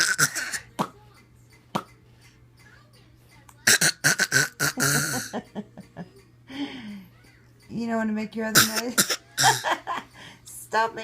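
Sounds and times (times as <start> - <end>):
baby fake coughing: 0.0 - 1.0, 3.6 - 5.3, 8.5 - 9.6.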